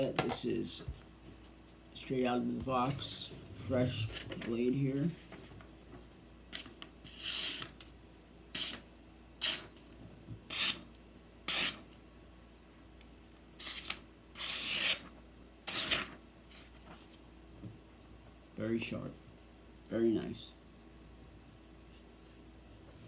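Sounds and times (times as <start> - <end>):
knife slicing through paper: 13.6 - 15.1, 15.7 - 16.7.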